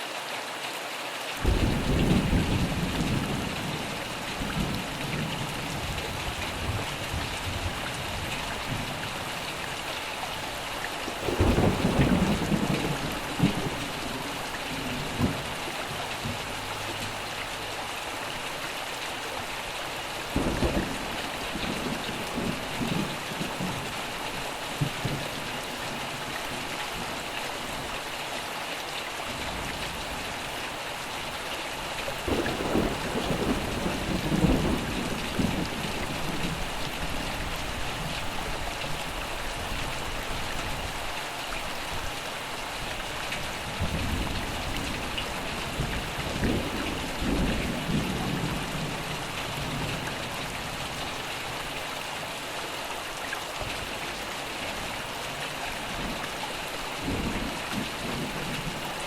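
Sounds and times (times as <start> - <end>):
heavy rain falling: 0.0 - 59.0
thunder rumbling: 1.4 - 9.3, 11.1 - 17.8, 20.3 - 24.2, 32.2 - 38.2, 43.6 - 51.2, 57.0 - 59.0.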